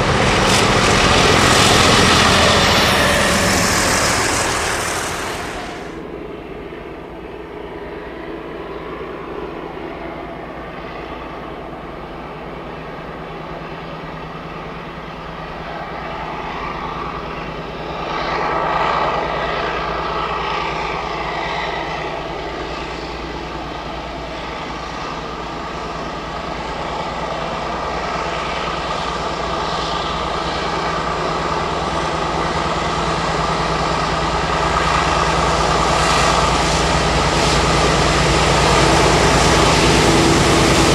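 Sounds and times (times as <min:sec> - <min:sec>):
diesel locomotive engine running: 0:00.0 - 0:07.4, 0:20.4 - 0:40.9.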